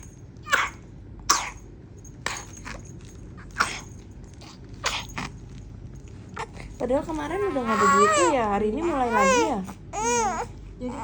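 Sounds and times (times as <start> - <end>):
baby coughing: 0.4 - 1.7, 3.6 - 3.9.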